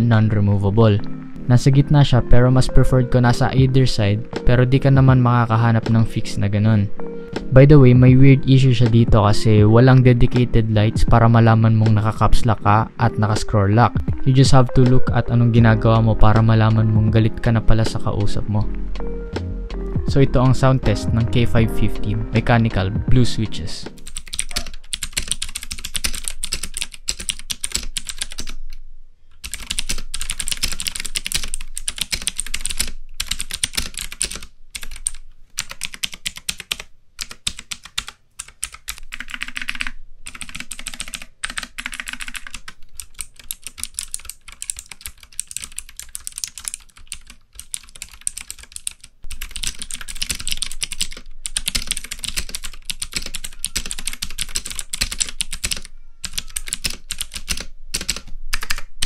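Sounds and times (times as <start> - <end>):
clicky mechanical keyboard typing: 24.0 - 28.6, 29.4 - 59.0.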